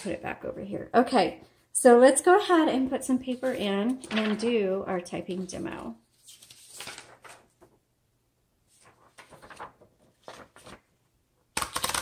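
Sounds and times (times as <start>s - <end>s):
paper rustling: 3.1s - 7.8s, 8.6s - 11.0s
typewriter platen clicking: 11.6s - 12.0s.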